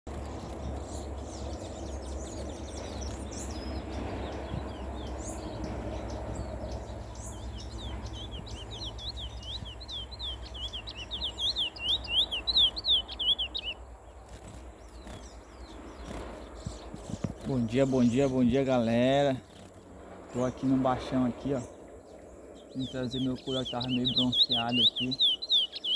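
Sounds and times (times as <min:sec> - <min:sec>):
low steady rumble: 0:00.1 - 0:24.9
songbird singing: 0:00.1 - 0:25.9.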